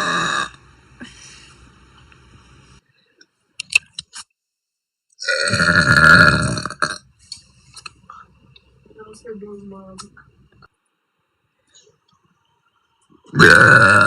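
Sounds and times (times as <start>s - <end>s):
woman burping: 5.2s - 7.0s, 13.3s - 14.0s.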